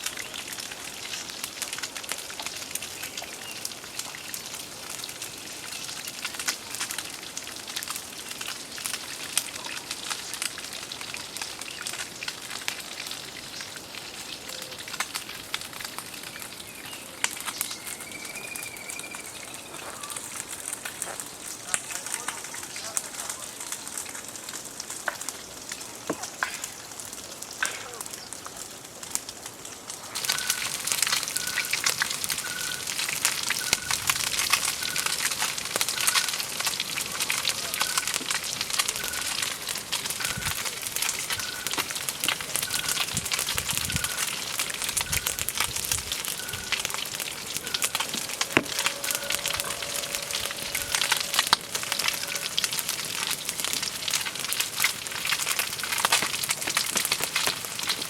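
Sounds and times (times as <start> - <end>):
campfire crackling and popping: 0.0 - 58.0
short high chirp: 46.4 - 53.5.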